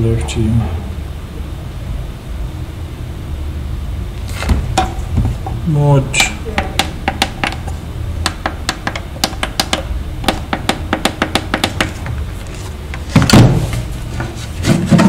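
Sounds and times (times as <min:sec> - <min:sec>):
low hum: 0:00.0 - 0:15.0
loud thump: 0:04.3 - 0:05.6, 0:13.0 - 0:15.0.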